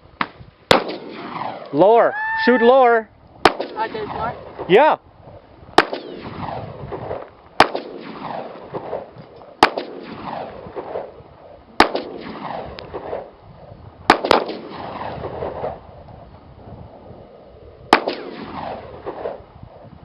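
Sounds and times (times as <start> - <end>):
gunshots with echo: 0.7 - 1.6, 3.4 - 4.7, 5.8 - 11.1, 11.8 - 13.3, 14.1 - 15.6, 17.9 - 19.4.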